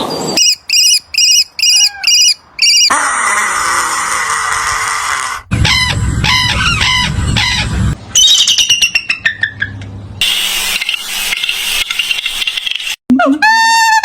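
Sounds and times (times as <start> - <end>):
bird calls: 0.1 - 2.9, 5.5 - 9.8.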